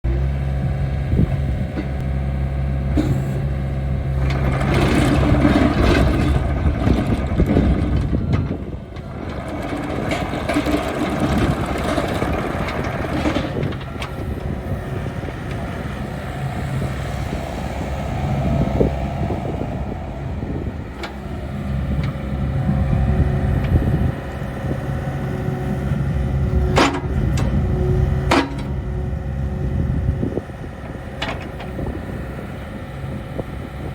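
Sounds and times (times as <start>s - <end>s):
excavator diesel engine running: 0.1s - 33.9s.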